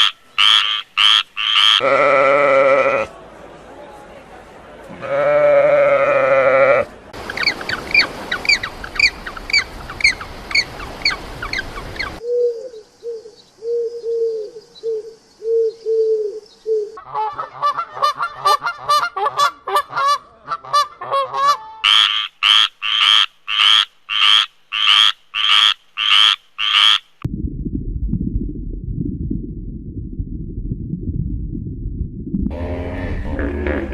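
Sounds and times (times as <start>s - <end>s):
low rumble: 27.2s - 33.5s
low animal calls: 32.5s - 33.9s.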